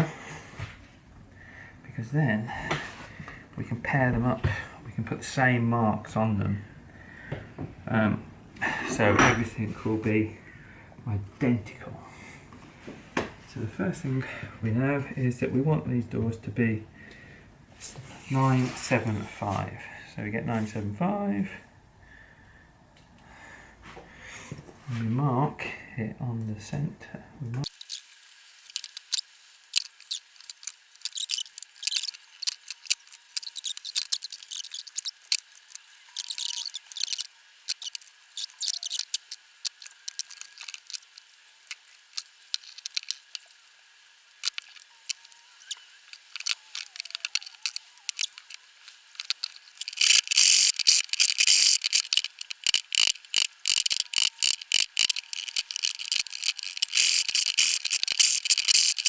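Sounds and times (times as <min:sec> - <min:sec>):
rapid rattling clicks: 0:27.7 - 0:59.0
scattered clicks: 0:27.7 - 0:59.0
tools scratching on wood: 0:27.7 - 0:59.0.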